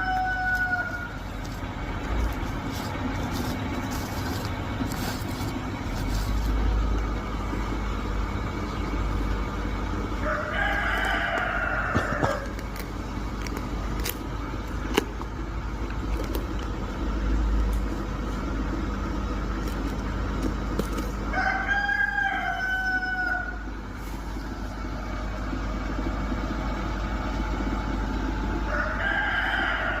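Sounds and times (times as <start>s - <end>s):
rooster crowing: 0.0s - 2.8s, 10.2s - 12.6s, 21.3s - 23.8s, 28.5s - 30.0s
steady background hum: 0.0s - 30.0s.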